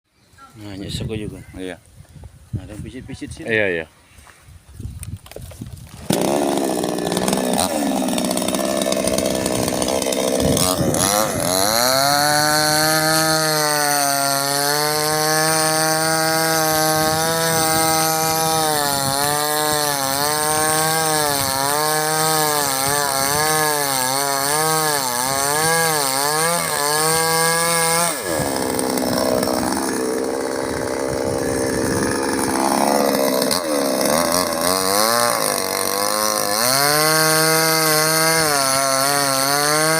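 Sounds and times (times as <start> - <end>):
chainsaw cutting wood: 5.4 - 39.9.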